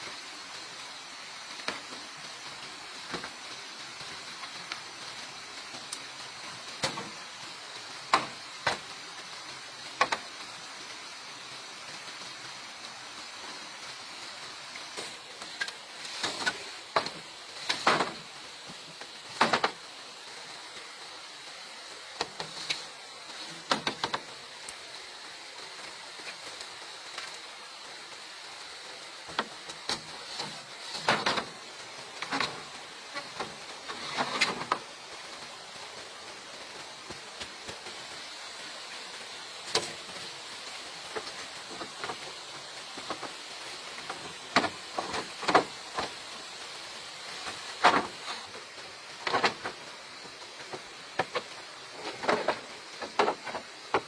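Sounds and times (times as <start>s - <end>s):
background hiss: 0.0s - 54.0s
bamboo knocking and clattering: 6.8s - 7.2s, 8.1s - 8.9s, 10.0s - 10.3s, 14.9s - 19.9s, 22.2s - 24.7s, 29.3s - 34.9s, 39.6s - 46.5s, 47.3s - 54.0s.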